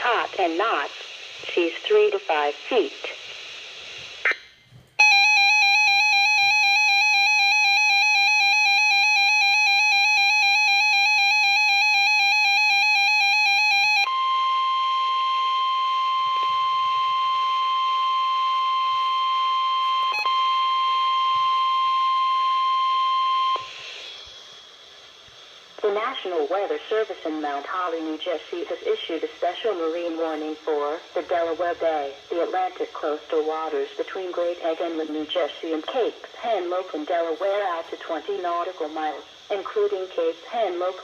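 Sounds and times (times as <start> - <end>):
radio hiss: 0.0 - 4.6, 21.3 - 41.0
steady warning alert tone: 5.0 - 17.6
electronic alarm warbling: 5.0 - 23.6.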